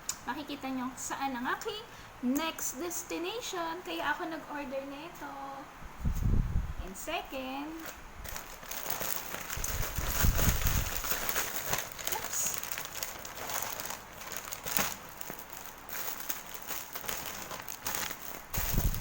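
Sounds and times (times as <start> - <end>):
plastic packaging crinkling: 7.7 - 19.0.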